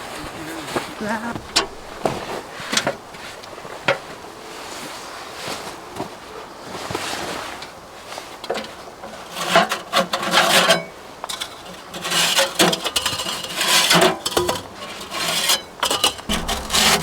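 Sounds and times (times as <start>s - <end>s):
scraping rasping strokes: 16.3s - 17.0s.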